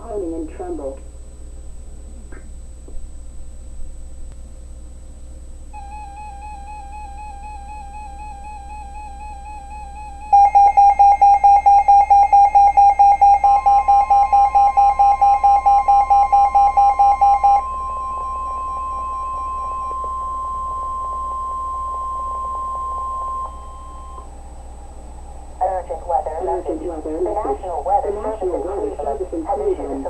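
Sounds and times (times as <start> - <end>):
steady alarm tone: 5.7 - 30.0
fast beeping alarm: 5.8 - 24.3.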